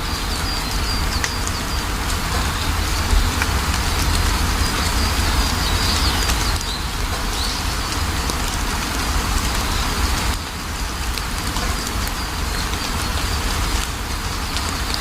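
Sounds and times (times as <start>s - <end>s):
deep low rumble: 0.0s - 9.6s
steady rain falling: 0.0s - 15.0s.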